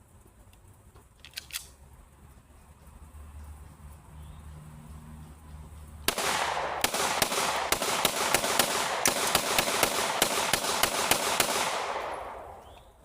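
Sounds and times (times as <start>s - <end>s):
rapid gunfire: 6.1s - 12.6s.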